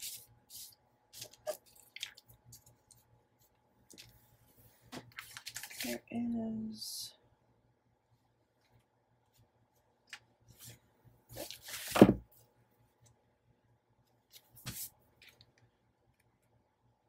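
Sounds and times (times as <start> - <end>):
paper rustling: 0.0 - 3.0, 5.0 - 6.0, 10.6 - 12.2.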